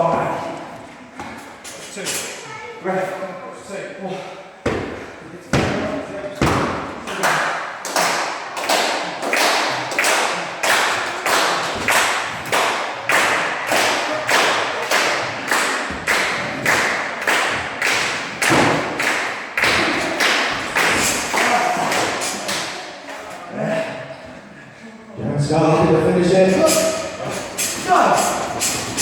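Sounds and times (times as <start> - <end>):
audience thudding in rhythm: 7.2 - 22.9.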